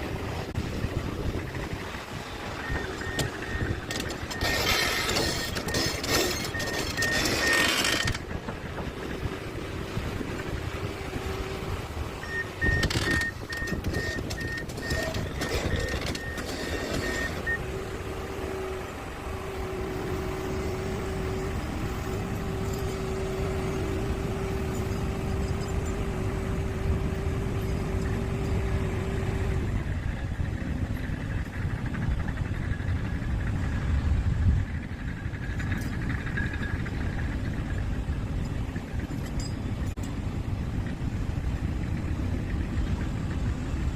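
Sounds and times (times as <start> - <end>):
excavator diesel engine rumbling: 0.0 - 43.9
travel alarm beeping: 2.6 - 8.2, 12.2 - 17.7.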